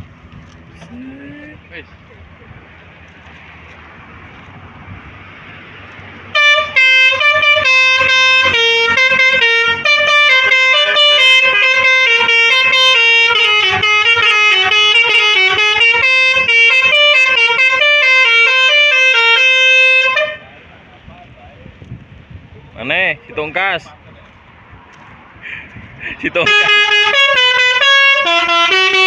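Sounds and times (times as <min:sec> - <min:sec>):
multi-tone bus air horn melody: 0:06.3 - 0:20.5, 0:26.4 - 0:29.0.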